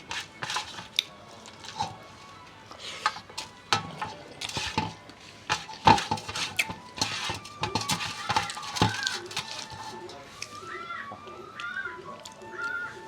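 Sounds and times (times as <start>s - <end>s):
dishes and utensils clinking: 0.0s - 10.6s.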